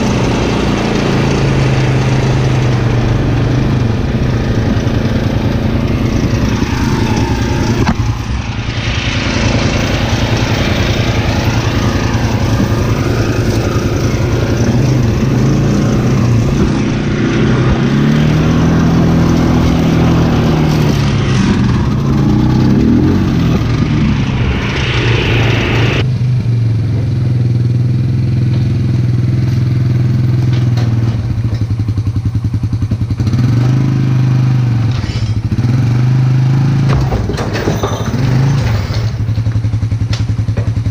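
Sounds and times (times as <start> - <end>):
brush mower engine running: 0.0 - 26.0
rushing noise: 0.0 - 26.7.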